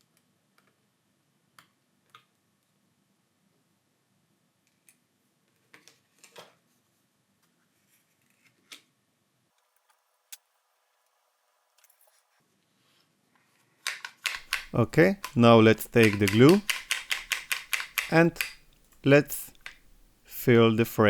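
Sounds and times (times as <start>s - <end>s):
hand tools clicking on phone parts: 13.8s - 21.0s.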